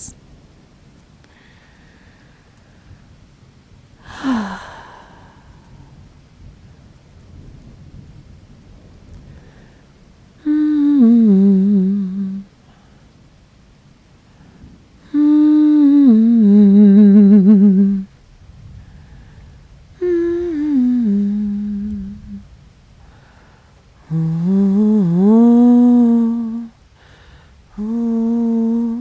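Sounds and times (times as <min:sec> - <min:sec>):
woman humming a lullaby: 0:04.0 - 0:05.6, 0:10.4 - 0:12.6, 0:15.0 - 0:18.1, 0:20.0 - 0:22.4, 0:24.0 - 0:26.8, 0:27.7 - 0:29.0.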